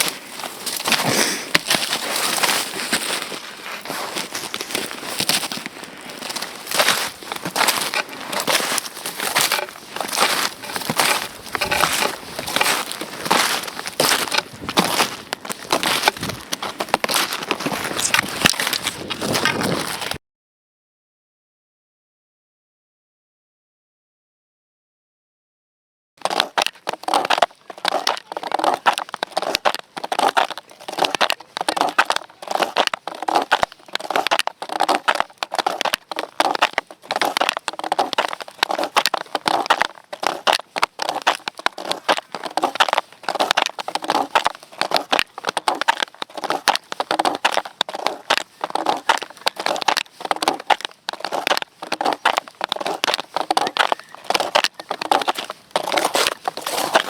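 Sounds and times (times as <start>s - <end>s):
snowshoe footsteps crunching snow: 0.0s - 20.2s, 26.2s - 57.0s.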